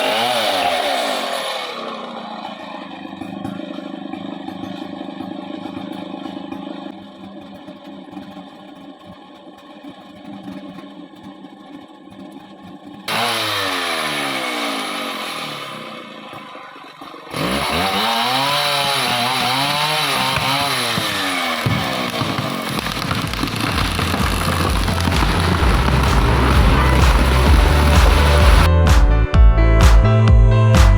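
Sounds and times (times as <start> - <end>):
chainsaw engine idling: 0.0 - 7.2, 13.1 - 28.7.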